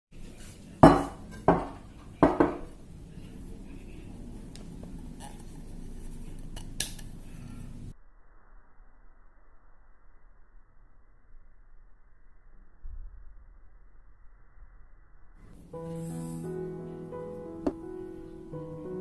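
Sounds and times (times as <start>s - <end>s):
low background hum: 0.2s - 7.9s
dishes knocking: 0.8s - 2.8s, 17.6s - 17.8s.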